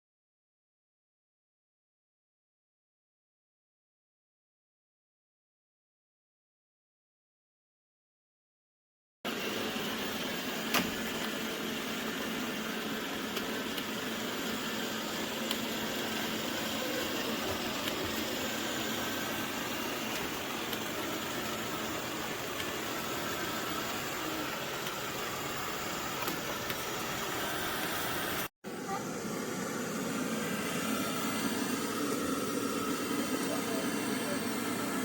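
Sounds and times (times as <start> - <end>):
robot vacuum cleaner running: 9.3 - 35.0.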